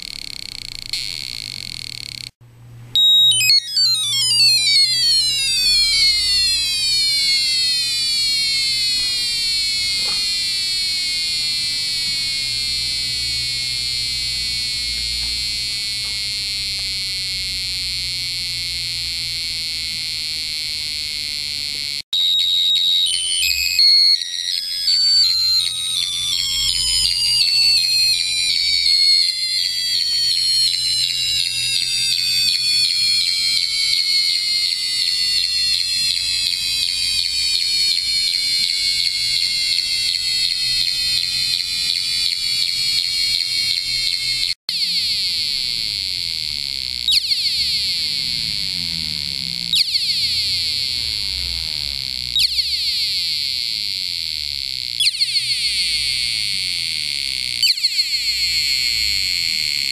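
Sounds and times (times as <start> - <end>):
steady high-pitched tone: 2.9 - 20.2, 21.7 - 53.2
buzzy electronic tone: 3.0 - 59.9.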